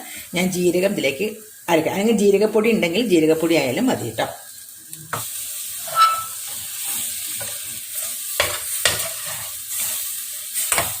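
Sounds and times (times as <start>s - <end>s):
spices sizzling in a pan: 0.0s - 11.0s
spoon scraping against a pan: 5.1s - 11.0s.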